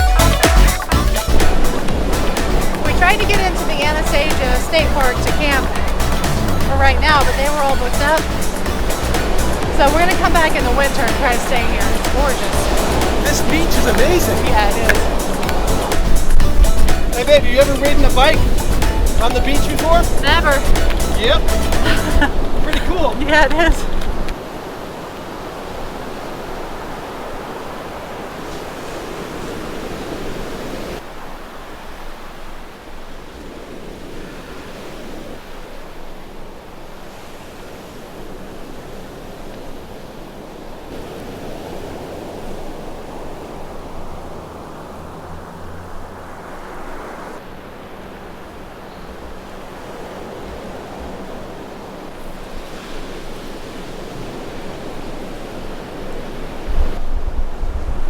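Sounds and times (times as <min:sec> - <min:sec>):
ocean surf washing: 0:00.0 - 0:58.0
wind buffeting microphone: 0:01.2 - 0:31.0, 0:48.1 - 0:58.0.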